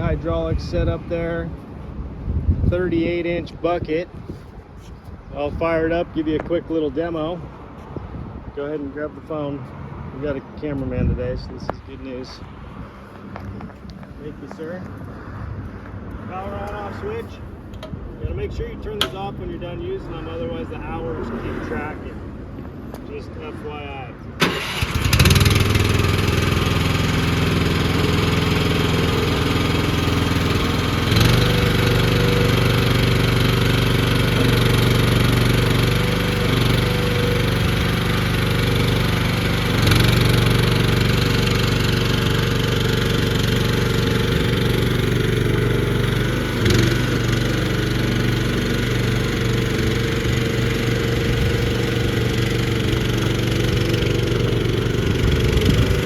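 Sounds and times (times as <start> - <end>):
gasoline engine running: 24.4 - 56.0.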